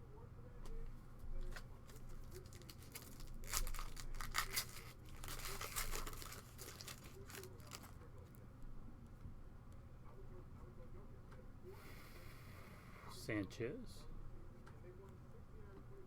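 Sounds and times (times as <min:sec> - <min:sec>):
foil wrapper tearing and crinkling: 0:01.4 - 0:08.0.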